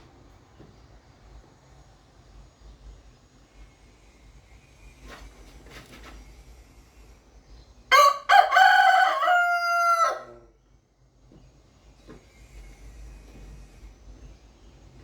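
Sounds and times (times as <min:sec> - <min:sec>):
rooster crowing: 0:07.9 - 0:10.5.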